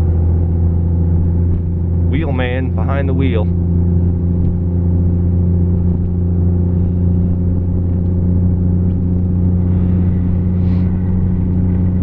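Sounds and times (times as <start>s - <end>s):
engine droning inside cab: 0.0s - 12.0s.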